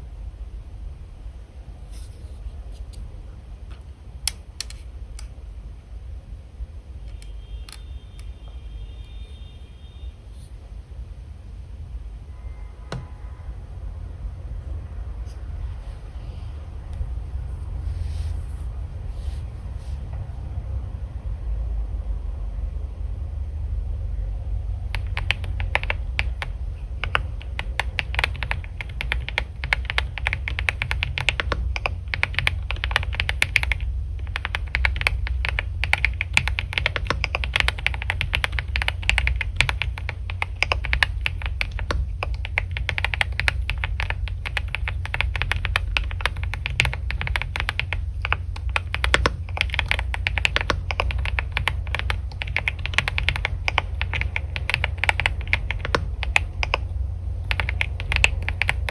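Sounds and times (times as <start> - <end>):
steady low hum: 0.0 - 58.9
fast typing on keyboard: 24.8 - 58.9.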